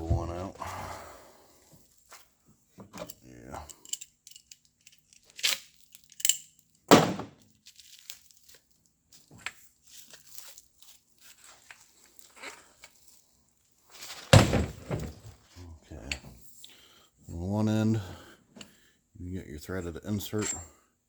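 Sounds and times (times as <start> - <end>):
heavy thunk: 6.9 - 7.3, 14.3 - 15.3
plastic wrap tearing and crinkling: 7.4 - 8.9, 9.8 - 12.4.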